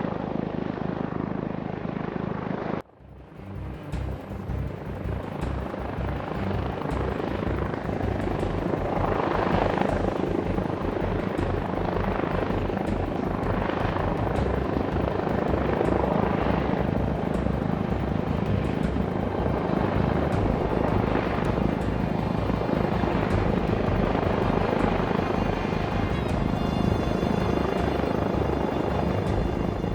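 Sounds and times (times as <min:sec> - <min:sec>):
rc helicopter rotor whirring: 0:03.8 - 0:29.9.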